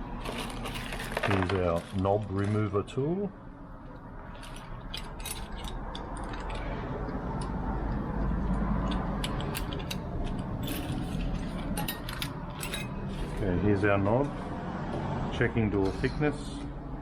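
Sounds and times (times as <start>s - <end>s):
steady low rumble: 3.4s - 15.7s
metallic clicks and rattles: 4.4s - 13.4s.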